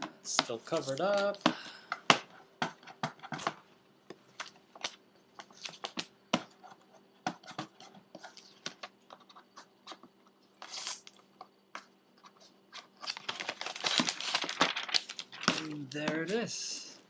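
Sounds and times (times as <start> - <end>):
plastic packaging crinkling: 12.7 - 16.4.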